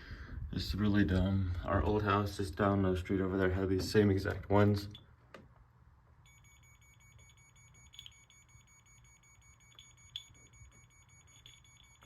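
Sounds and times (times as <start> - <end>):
distant smoke alarm beeping: 6.2 - 12.0.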